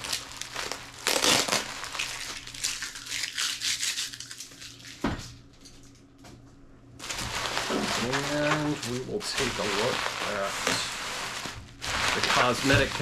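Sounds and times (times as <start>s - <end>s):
plastic wrap crinkling: 0.0s - 5.0s, 7.0s - 13.0s.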